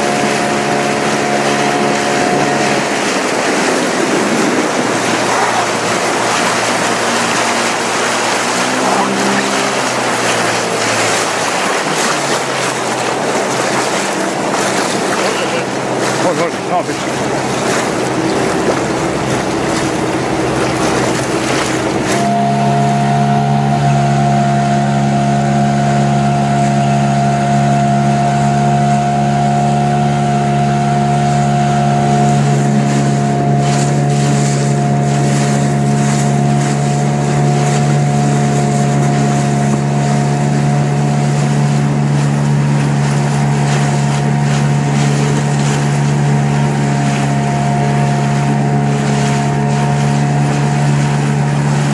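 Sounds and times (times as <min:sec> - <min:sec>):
wind noise on microphone: 0:00.0 - 0:15.2
motorboat engine droning: 0:00.0 - 0:51.9.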